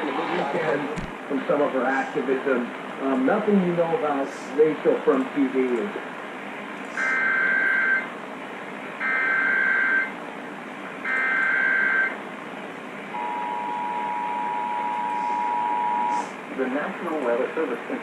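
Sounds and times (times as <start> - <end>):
radio static hiss: 0.0 - 6.1, 6.8 - 8.2, 14.6 - 18.0.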